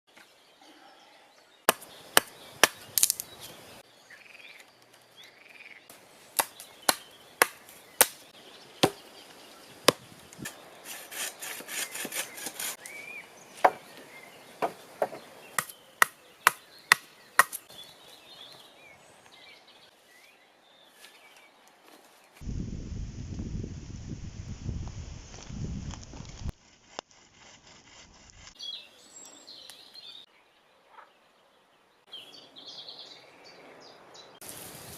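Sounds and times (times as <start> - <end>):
axe chopping wood: 1.7 - 3.2, 6.4 - 8.2, 8.8 - 9.0, 9.8 - 10.0, 14.6 - 17.6
rasping scraping sound: 10.4 - 12.8, 26.2 - 28.6.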